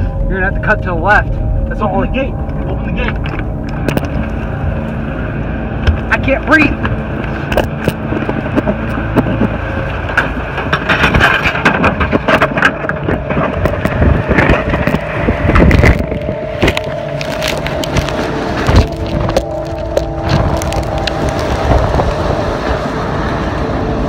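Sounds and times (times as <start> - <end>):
suv engine running: 0.0 - 24.0
wheels and body knocking and rattling: 5.8 - 24.0.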